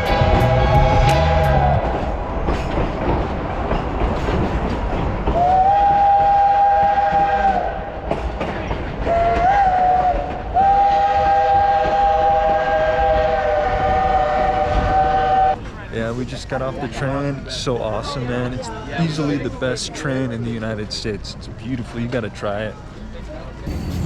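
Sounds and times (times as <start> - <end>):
steam locomotive whistle: 0.0 - 2.1, 5.4 - 7.8, 9.0 - 15.6, 23.7 - 24.0
train rumbling: 0.0 - 18.6, 23.6 - 24.0.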